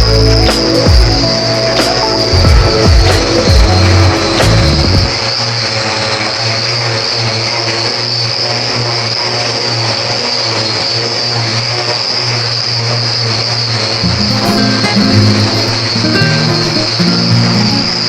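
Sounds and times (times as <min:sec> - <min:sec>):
motor hum and whine: 0:00.0 - 0:14.3.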